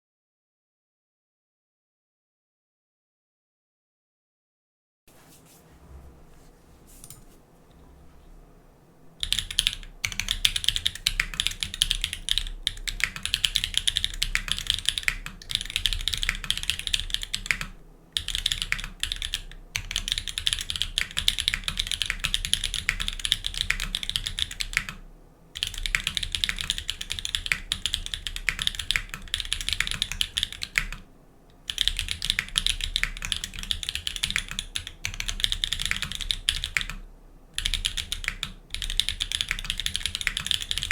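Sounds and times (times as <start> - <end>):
fast mechanical keyboard typing: 9.2 - 25.0, 25.6 - 37.0, 37.6 - 40.9.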